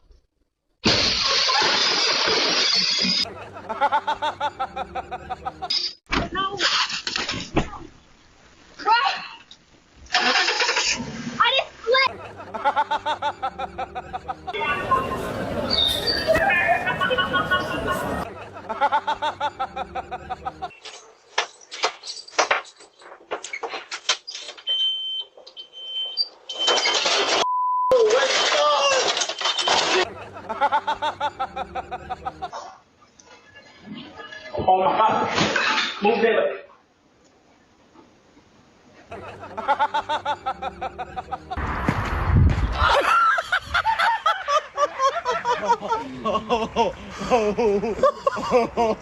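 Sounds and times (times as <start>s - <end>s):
person laughing hard: 39.1s - 41.6s, 42.7s - 49.0s.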